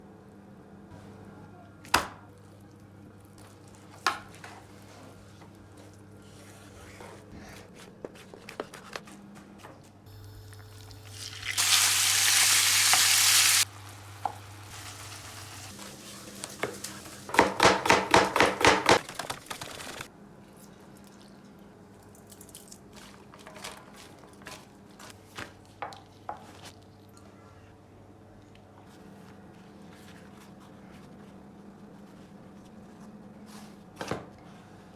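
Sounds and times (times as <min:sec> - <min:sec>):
loud sizzling: 0:10.8 - 0:17.3.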